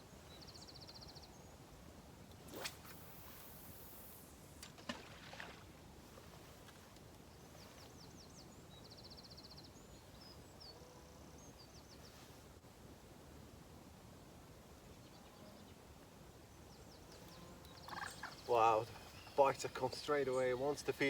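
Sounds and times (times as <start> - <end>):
small bird chirping and trilling: 16.9 - 20.8.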